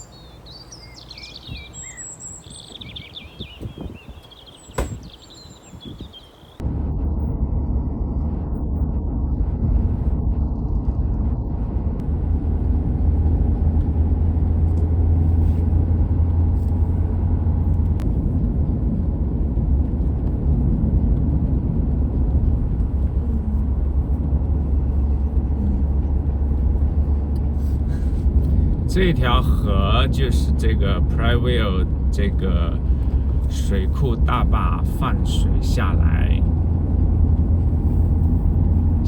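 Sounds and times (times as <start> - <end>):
vehicle engine and road noise: 0.0 - 39.0.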